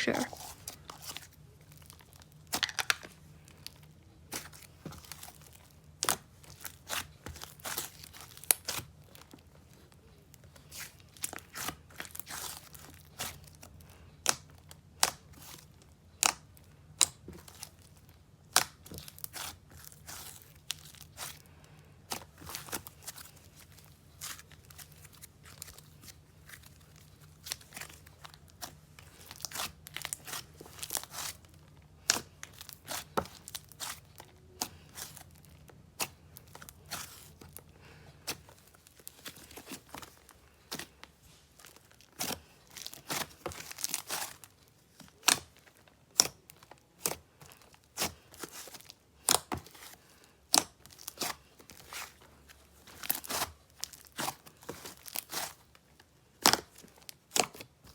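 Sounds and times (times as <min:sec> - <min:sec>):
slime squishing crackles and pops: 0:01.0 - 0:09.3, 0:14.2 - 0:15.5, 0:16.1 - 0:17.8, 0:18.5 - 0:21.3, 0:49.2 - 0:49.7, 0:56.4 - 0:57.7.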